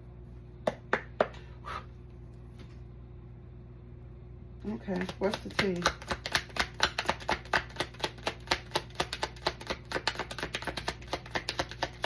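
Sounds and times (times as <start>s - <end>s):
cards being shuffled: 4.9s - 12.0s.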